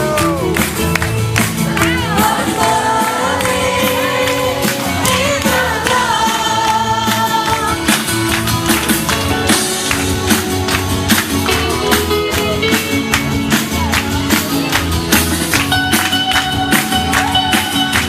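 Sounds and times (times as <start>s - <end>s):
beat with bass and percussion: 0.0s - 18.0s
voices singing together: 1.7s - 8.1s.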